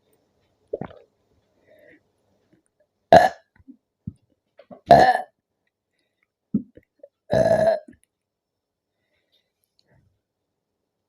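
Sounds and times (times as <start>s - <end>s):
woman burping: 3.1s - 3.4s, 4.8s - 5.3s, 7.3s - 8.0s.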